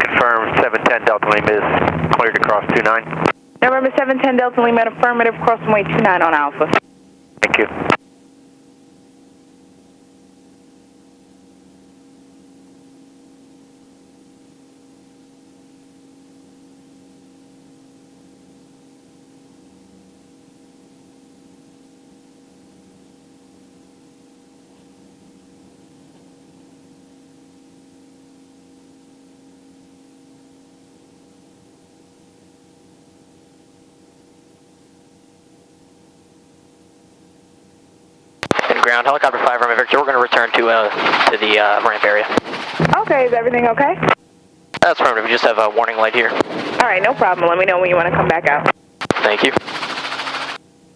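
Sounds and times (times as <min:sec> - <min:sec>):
helicopter cabin hum with hiss: 0:00.0 - 0:06.8, 0:07.4 - 0:08.0, 0:38.4 - 0:44.2, 0:44.8 - 0:50.6.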